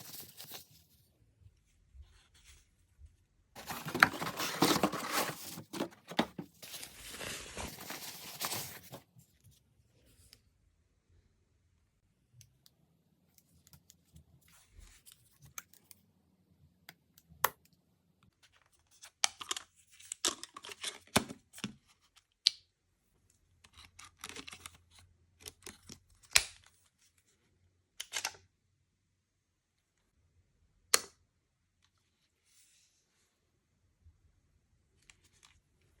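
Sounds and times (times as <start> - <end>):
packaging rustling and tearing: 3.6 - 9.0.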